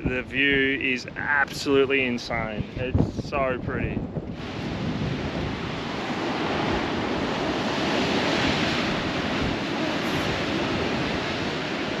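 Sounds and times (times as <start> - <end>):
wind buffeting microphone: 0.0 - 12.0
waves washing against rocks: 4.3 - 12.0.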